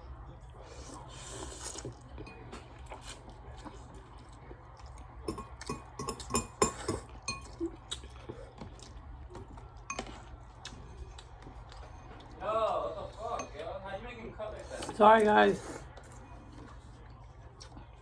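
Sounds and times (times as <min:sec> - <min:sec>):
utensils clinking against a dish: 0:02.2 - 0:03.2, 0:05.2 - 0:08.0, 0:09.8 - 0:12.4, 0:13.0 - 0:13.8, 0:14.7 - 0:16.8.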